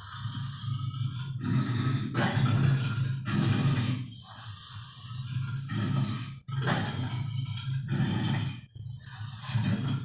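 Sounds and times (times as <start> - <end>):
creature growling and roaring: 5.2 - 10.0.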